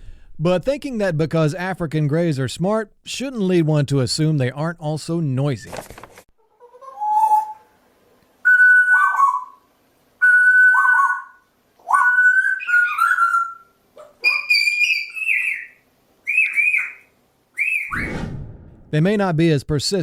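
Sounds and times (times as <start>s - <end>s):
parrot whistling: 6.9s - 7.7s, 8.4s - 9.6s, 10.2s - 18.0s.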